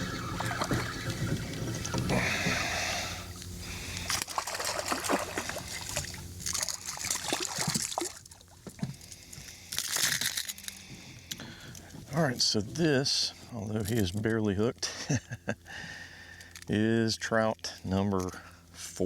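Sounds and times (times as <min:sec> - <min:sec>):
water splashing: 0:00.0 - 0:08.6.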